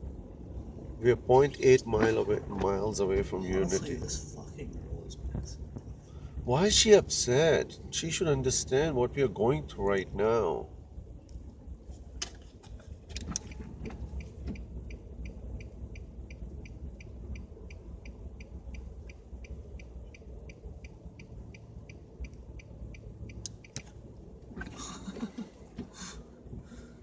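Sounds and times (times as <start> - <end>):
car cabin rumble: 0.0 - 27.0
car indicator relay ticking: 13.1 - 24.6.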